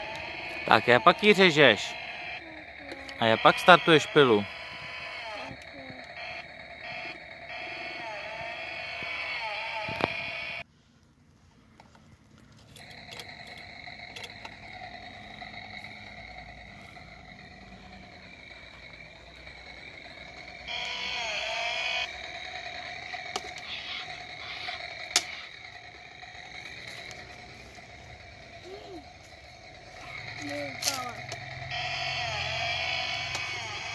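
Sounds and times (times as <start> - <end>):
toy chainsaw buzzing drone: 0.0 - 10.6, 12.8 - 33.9
sharp clicks: 23.1 - 25.8.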